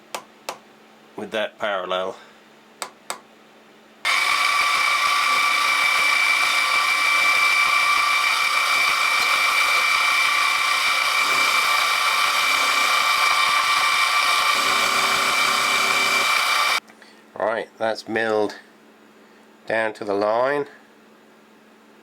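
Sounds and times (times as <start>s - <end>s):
milling machine whining: 4.1s - 16.8s.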